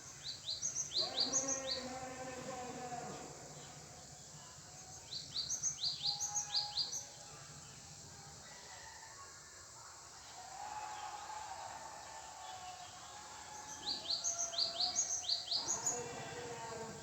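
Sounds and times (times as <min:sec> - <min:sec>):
bird chirping: 0:00.0 - 0:07.2, 0:13.5 - 0:16.9.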